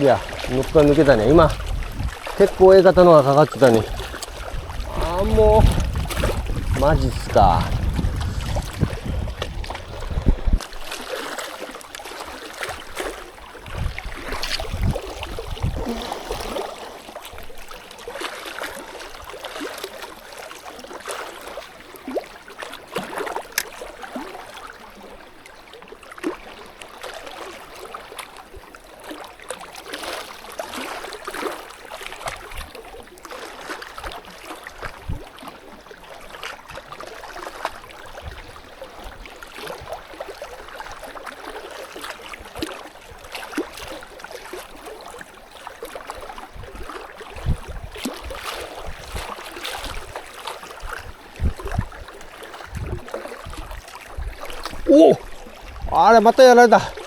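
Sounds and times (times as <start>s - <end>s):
wind buffeting microphone: 0.0s - 11.0s, 12.9s - 16.6s, 34.8s - 35.3s, 46.4s - 50.2s, 50.8s - 56.2s
small waves lapping: 0.0s - 57.0s.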